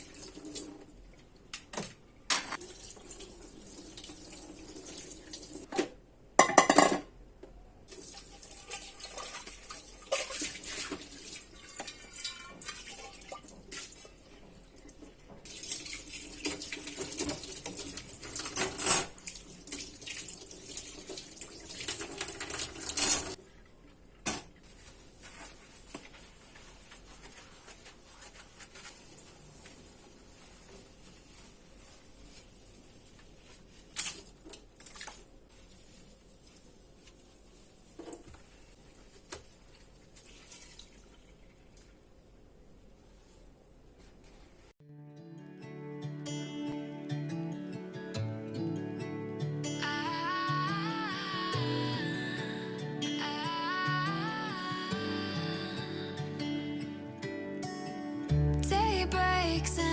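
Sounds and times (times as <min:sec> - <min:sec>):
dishes and cutlery clinking: 0:06.4 - 0:07.1, 0:11.6 - 0:13.4, 0:18.2 - 0:19.2
tap water running into sink: 0:15.5 - 0:23.4.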